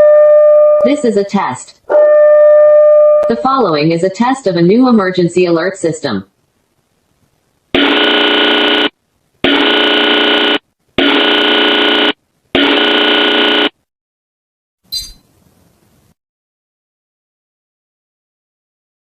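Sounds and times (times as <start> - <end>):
buzzing warning tone blasts: 7.8 - 13.8.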